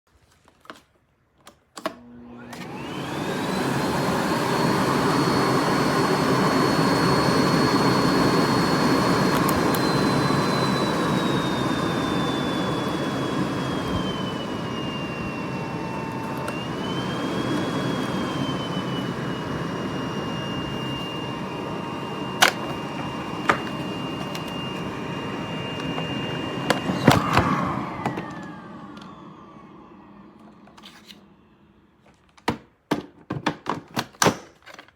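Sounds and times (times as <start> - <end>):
vacuum cleaner motor whining: 1.8 - 32.3
vacuum cleaner switch click: 8.2 - 13.1, 16.0 - 16.7, 22.1 - 25.0, 25.6 - 29.3.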